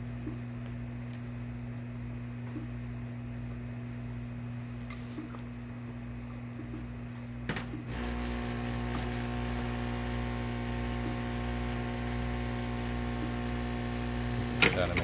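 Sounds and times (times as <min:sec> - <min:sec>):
heat gun motor and fan hum: 0:07.5 - 0:15.0.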